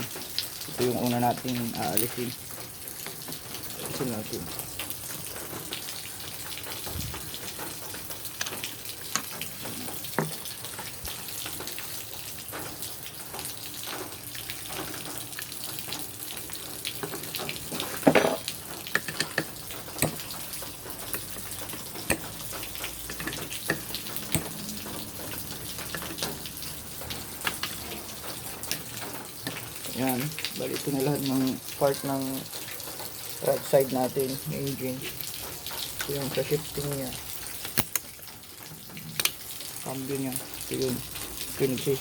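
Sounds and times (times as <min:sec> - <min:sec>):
tools clicking and clinking: 0:17.0 - 0:20.4, 0:21.0 - 0:26.4, 0:37.6 - 0:38.1.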